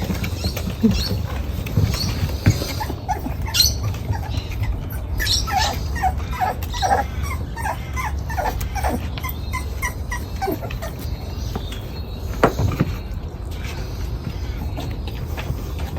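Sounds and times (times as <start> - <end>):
puppy whimpering: 0.0 - 12.0.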